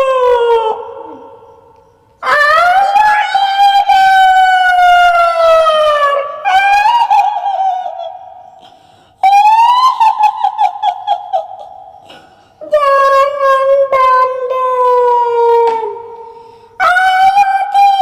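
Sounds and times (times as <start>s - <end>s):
woman wailing cry: 0.0s - 1.2s, 2.2s - 8.4s, 9.2s - 12.0s
wavering cackle: 6.0s - 12.5s.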